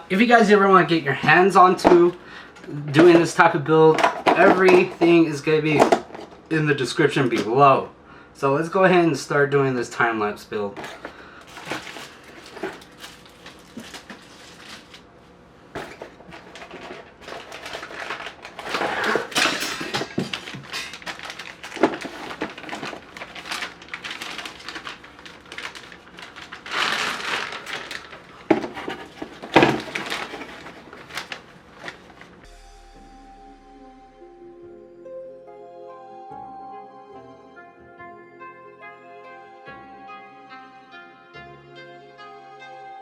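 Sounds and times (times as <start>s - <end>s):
packaging rustling: 0.4s - 6.5s, 10.7s - 32.5s.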